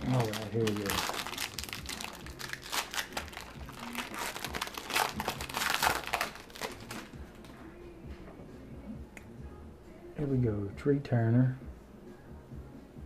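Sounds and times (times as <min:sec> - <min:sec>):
plastic wrapping crinkling and tearing: 0:00.0 - 0:07.2.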